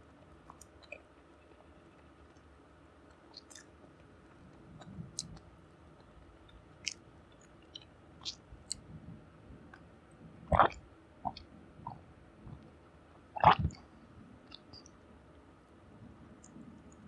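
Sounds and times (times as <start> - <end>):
mouth clicks and smacks: 3.1 - 3.7, 4.8 - 5.5, 6.5 - 8.8, 10.5 - 12.0, 13.4 - 13.8
close-miked chewing: 4.8 - 8.8.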